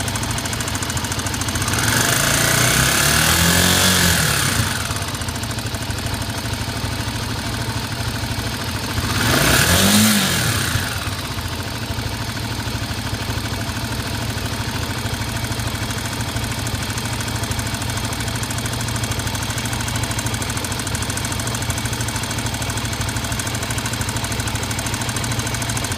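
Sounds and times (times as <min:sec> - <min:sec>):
engine knocking: 0:00.0 - 0:25.9
motorcycle engine idling and revving: 0:00.0 - 0:25.9.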